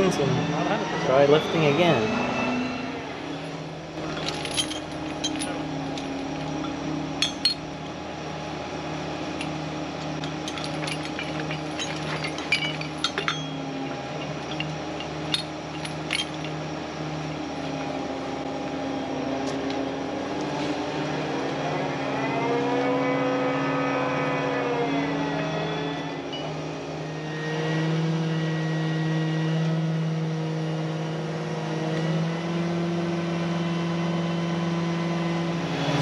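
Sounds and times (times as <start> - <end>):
diesel engine idling and revving: 0.0 - 36.0
metal chains clinking: 3.4 - 7.7, 9.4 - 16.7.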